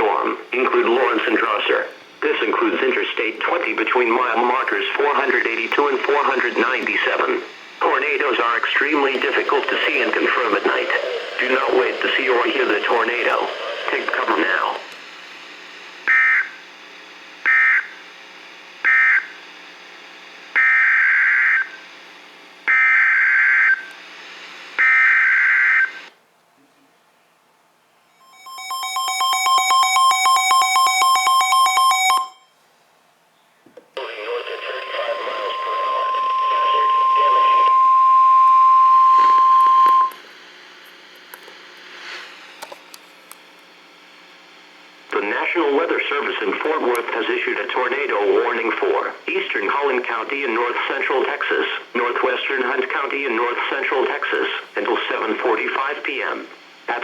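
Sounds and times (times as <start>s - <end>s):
faint radio hiss with clicks: 0.0s - 18.7s, 23.7s - 24.8s, 33.6s - 37.8s, 39.9s - 57.0s
faint steady hum: 0.0s - 57.0s
buzzing digital data tones: 28.2s - 32.4s
high alert tone: 28.2s - 32.5s, 34.8s - 40.2s.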